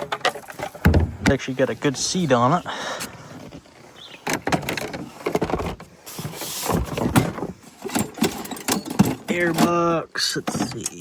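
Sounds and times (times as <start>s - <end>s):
hard knocks on plastic parts: 0.8s - 1.4s
rustling scrapes: 3.0s - 8.5s.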